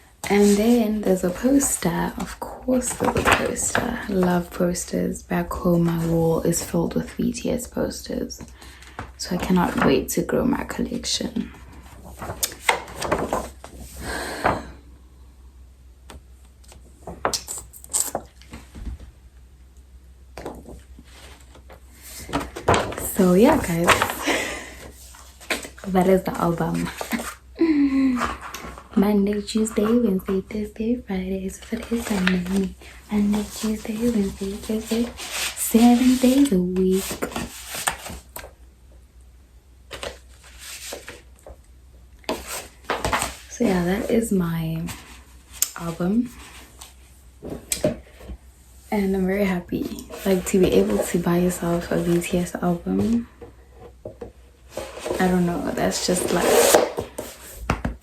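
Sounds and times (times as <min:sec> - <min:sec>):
paper rustling: 0:00.2 - 0:04.5, 0:11.7 - 0:14.0, 0:20.4 - 0:27.4, 0:31.6 - 0:38.5, 0:39.9 - 0:41.6, 0:42.3 - 0:44.2, 0:50.0 - 0:53.2
paper rustling and light taps: 0:01.4 - 0:04.0.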